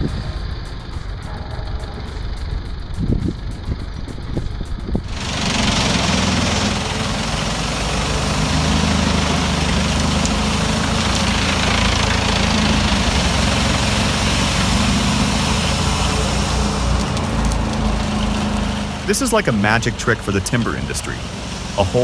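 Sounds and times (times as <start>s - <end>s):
heavy machine engine running: 5.0s - 22.0s.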